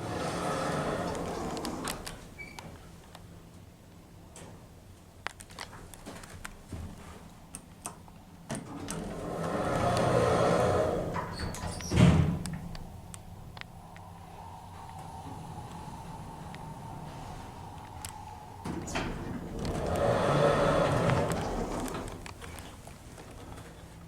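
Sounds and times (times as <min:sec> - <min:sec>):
lift doors sliding: 0:00.0 - 0:02.6, 0:08.5 - 0:22.6.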